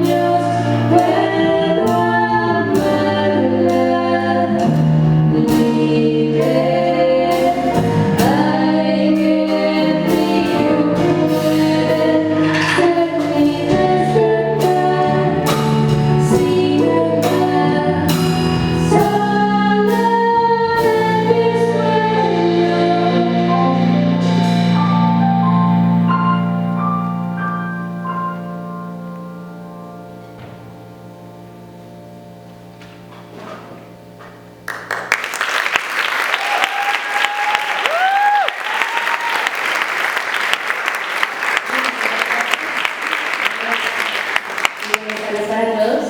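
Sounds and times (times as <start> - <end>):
group singing in harmony: 0.0 - 24.2
instrumental accompaniment: 0.0 - 35.8.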